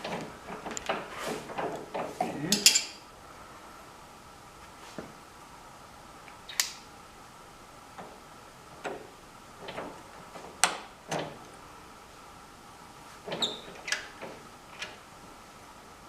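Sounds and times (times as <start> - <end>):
sharp clicks and light knocks: 0.0 - 3.0, 8.8 - 11.6
faint steady hum: 0.0 - 16.0.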